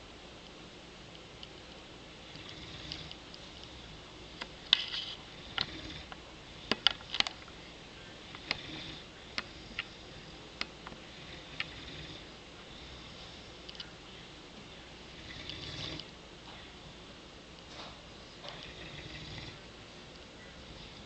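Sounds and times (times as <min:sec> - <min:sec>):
puppy snoring softly: 0:02.3 - 0:03.9, 0:05.3 - 0:06.1, 0:08.4 - 0:10.4, 0:11.1 - 0:13.6, 0:15.1 - 0:16.1, 0:18.4 - 0:19.7.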